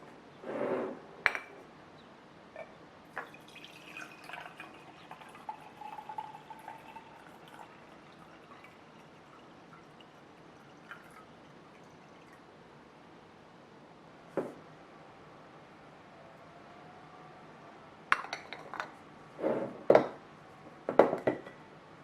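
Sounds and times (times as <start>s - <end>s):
water pouring into a container: 3.2s - 12.5s.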